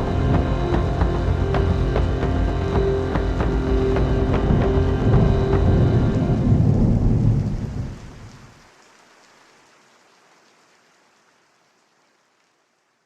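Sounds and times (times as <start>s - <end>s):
music: 0.0s - 7.2s
deep rumble: 0.0s - 8.5s.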